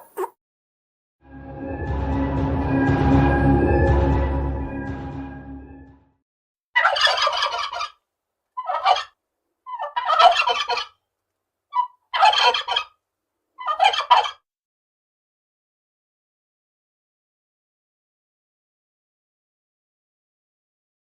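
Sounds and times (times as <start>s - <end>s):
turkeys gobbling: 0.0s - 0.3s, 6.8s - 8.0s, 8.6s - 9.1s, 9.7s - 10.9s, 11.8s - 12.9s, 13.6s - 14.4s.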